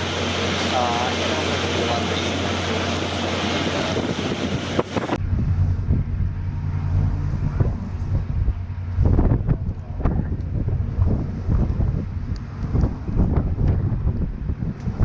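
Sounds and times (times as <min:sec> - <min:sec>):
rushing hiss of wind: 0:00.0 - 0:15.0
ship engines droning: 0:00.0 - 0:15.0
wind buffeting microphone: 0:00.0 - 0:15.0.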